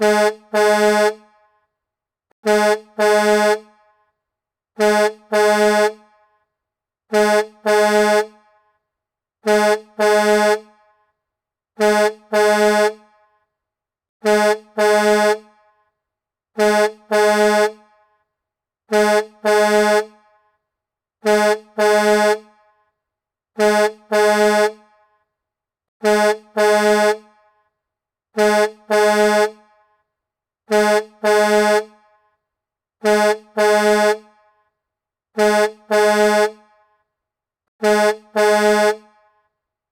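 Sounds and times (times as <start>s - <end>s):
truck horn double blasts: 0.0s - 1.3s, 2.4s - 3.9s, 4.8s - 6.3s, 7.1s - 8.6s, 9.4s - 10.9s, 11.8s - 13.3s, 14.2s - 15.7s, 16.6s - 18.1s, 18.9s - 20.5s, 21.2s - 22.7s, 23.6s - 25.0s, 26.0s - 27.5s, 28.4s - 29.8s, 30.7s - 32.2s, 33.0s - 34.4s, 35.4s - 36.8s, 37.8s - 39.3s.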